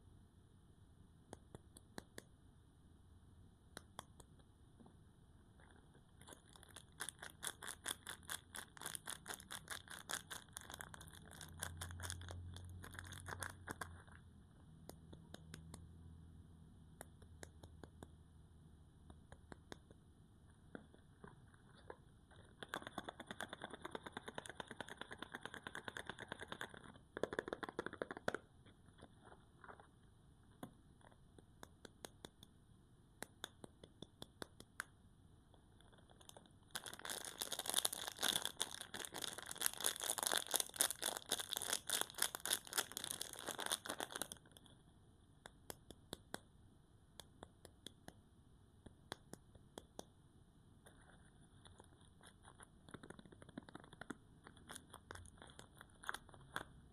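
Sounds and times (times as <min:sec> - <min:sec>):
packaging crinkling and tearing: 0:36.7 - 0:44.4.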